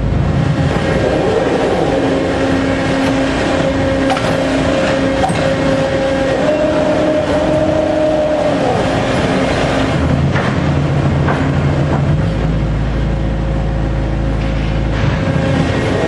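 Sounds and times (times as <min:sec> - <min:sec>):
motor whine: 0:00.0 - 0:10.2
low machine drone: 0:00.0 - 0:16.0.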